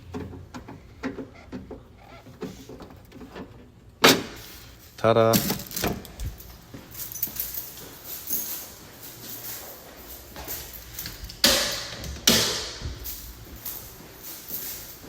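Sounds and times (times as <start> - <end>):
faint handling noises: 4.4 - 15.0
sharp knocks: 11.4 - 13.0.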